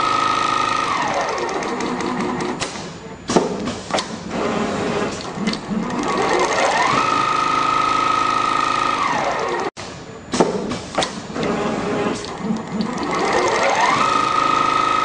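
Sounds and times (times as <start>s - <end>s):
sewing machine motor whine: 0.0s - 2.6s, 4.3s - 9.7s, 11.4s - 15.0s.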